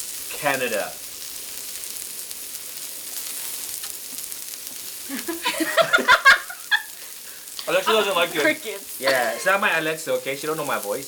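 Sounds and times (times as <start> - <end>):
food sizzling: 0.0 - 11.0
voices: 7.6 - 11.0.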